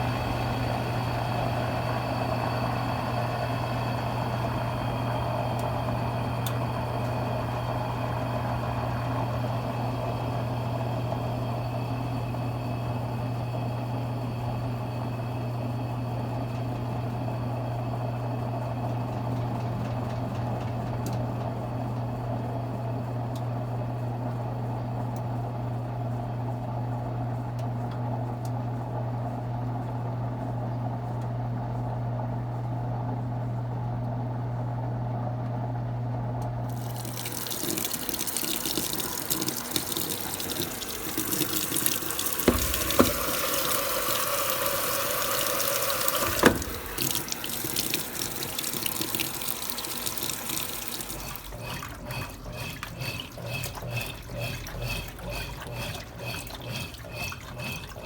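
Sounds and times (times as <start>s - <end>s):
washing machine humming: 0.0s - 58.0s
water rushing into tub: 36.7s - 58.0s
water moving: 36.8s - 58.0s.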